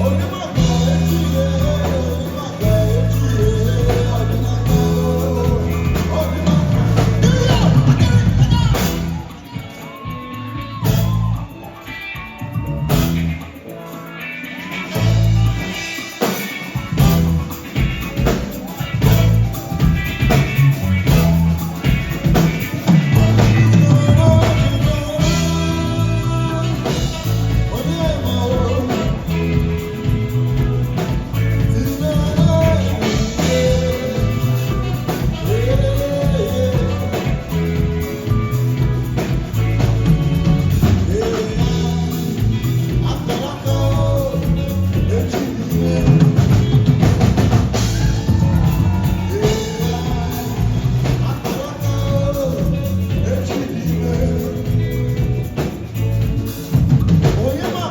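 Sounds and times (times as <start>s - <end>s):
bass: 0.0s - 57.9s
drum kit: 0.0s - 57.9s
electric guitar: 0.0s - 57.9s
person singing: 0.0s - 57.9s.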